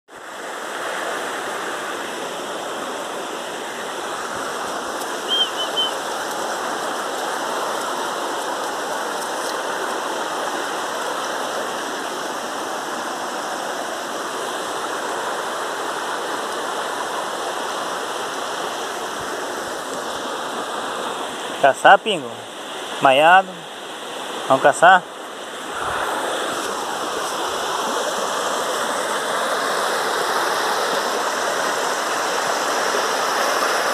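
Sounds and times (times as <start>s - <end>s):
flowing water rushing: 0.1s - 33.9s
short high chirps: 5.3s - 6.0s.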